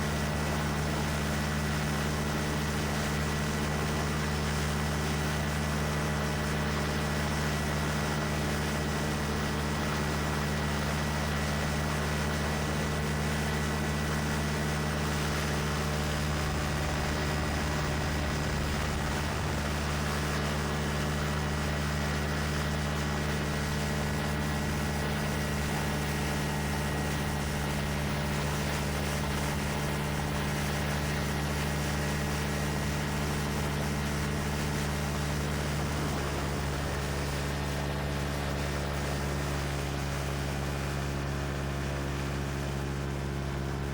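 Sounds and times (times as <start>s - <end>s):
ultralight engine running: 0.0s - 43.9s
wind rushing over microphone: 15.8s - 21.0s, 34.3s - 38.1s.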